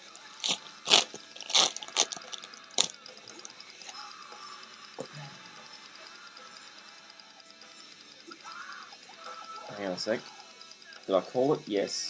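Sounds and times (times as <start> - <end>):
trading cards snapping: 0.4 - 3.4.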